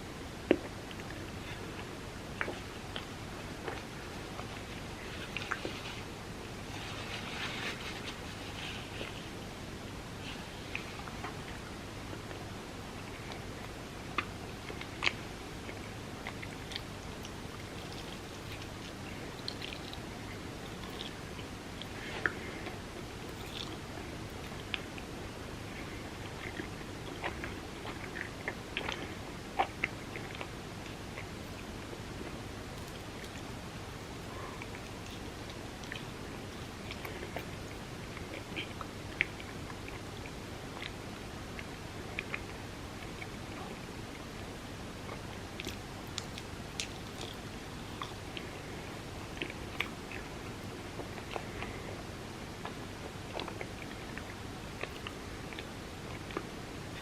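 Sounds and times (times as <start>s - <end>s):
steady background hiss: 0.0s - 57.0s
chewing with wet mouth clicks: 13.1s - 25.1s, 25.7s - 33.6s, 34.2s - 44.5s, 45.1s - 52.0s, 52.6s - 57.0s.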